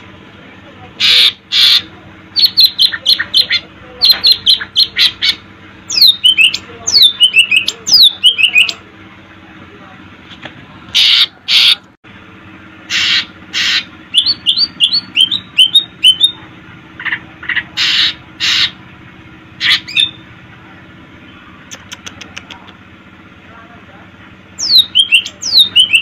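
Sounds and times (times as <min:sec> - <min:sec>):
bird singing harsh rasping notes: 0:01.0 - 0:08.8, 0:12.8 - 0:16.4, 0:17.0 - 0:18.8, 0:19.6 - 0:20.4, 0:24.5 - 0:26.0.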